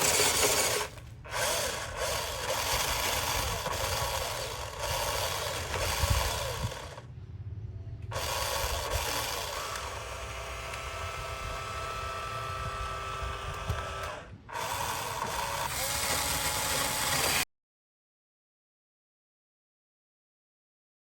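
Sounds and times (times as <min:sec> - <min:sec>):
gritty scraping with low knocks: 0:00.0 - 0:07.0
small electric motors whining: 0:00.0 - 0:07.1, 0:08.1 - 0:17.5.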